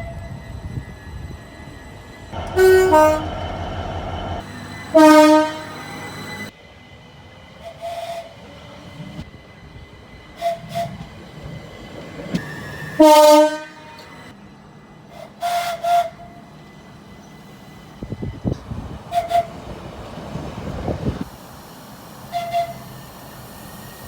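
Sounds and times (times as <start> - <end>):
train horn blasts: 2.4 - 6.5, 13.0 - 14.3.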